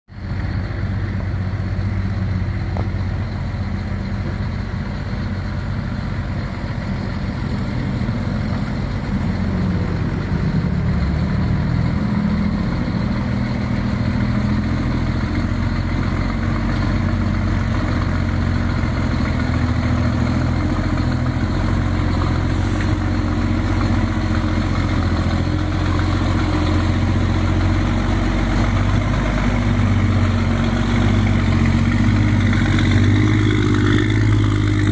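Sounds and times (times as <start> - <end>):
truck diesel engine rumbling: 0.1 - 34.9
brief high hiss: 22.5 - 23.0.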